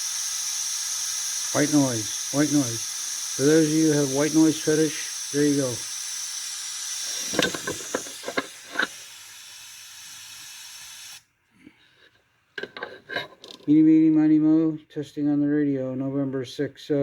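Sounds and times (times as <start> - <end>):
white noise hiss: 0.0 - 11.3.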